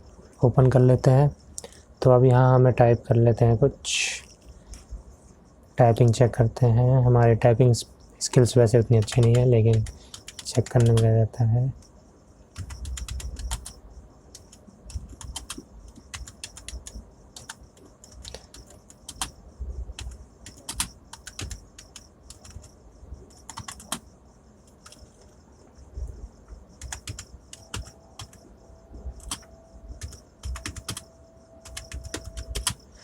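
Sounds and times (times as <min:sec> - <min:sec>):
keyboard typing: 0:08.3 - 0:11.8, 0:12.6 - 0:19.4, 0:20.0 - 0:25.3, 0:26.8 - 0:28.5, 0:29.2 - 0:32.9.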